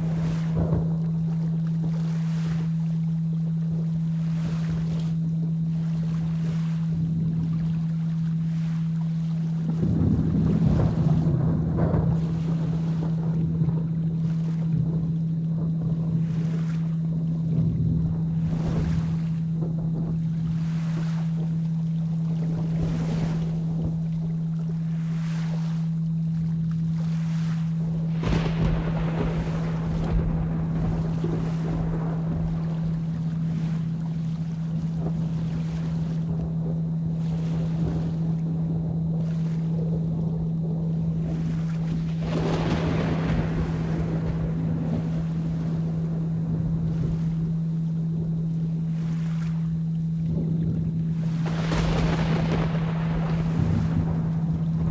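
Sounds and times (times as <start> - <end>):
low hum tone: 0.0 - 54.9
low rumble of thunder: 0.0 - 54.9
steady rain: 9.4 - 16.5, 27.7 - 48.9, 49.6 - 54.9
rolling thunder: 9.7 - 14.0, 28.0 - 34.2, 39.8 - 47.4, 50.3 - 54.9.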